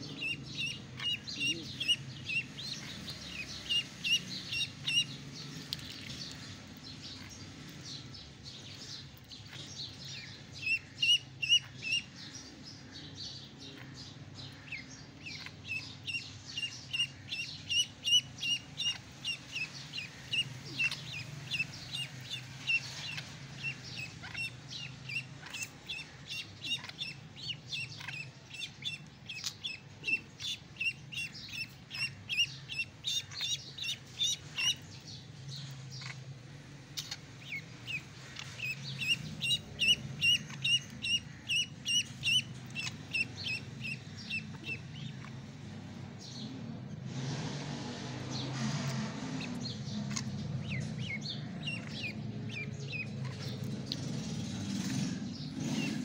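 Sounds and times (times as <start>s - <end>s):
ducklings peeping: 0.0s - 47.1s, 47.9s - 56.0s.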